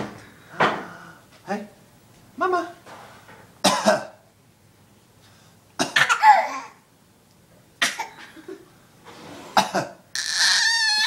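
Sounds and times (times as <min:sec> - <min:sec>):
cough-like vocal bursts: 0:03.6 - 0:04.2, 0:05.8 - 0:06.8, 0:07.8 - 0:08.3, 0:09.5 - 0:10.0.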